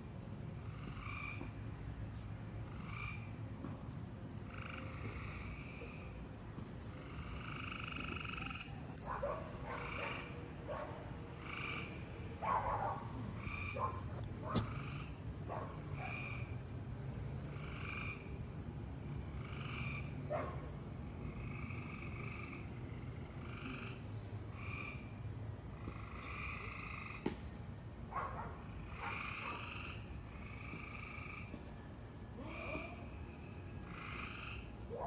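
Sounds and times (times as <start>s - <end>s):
steady low hum: 0.0s - 29.0s
frog croaking: 0.7s - 1.5s, 2.7s - 3.3s, 4.5s - 6.1s, 7.0s - 10.3s, 11.4s - 12.0s, 13.3s - 18.4s, 19.3s - 20.2s, 21.2s - 25.1s, 25.8s - 27.2s, 28.9s - 31.5s, 33.9s - 34.7s.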